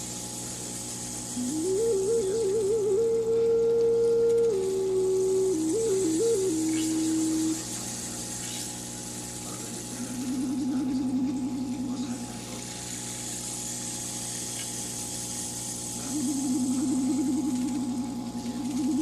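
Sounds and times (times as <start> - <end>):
aquarium equipment humming: 0.0 - 19.0
warbling tone: 1.4 - 7.7, 9.9 - 12.7, 16.0 - 19.0.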